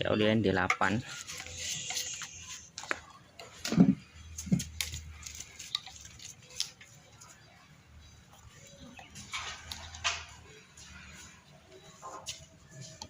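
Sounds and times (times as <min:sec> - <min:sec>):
plastic bottles clicking and tapping: 0:00.6 - 0:06.8.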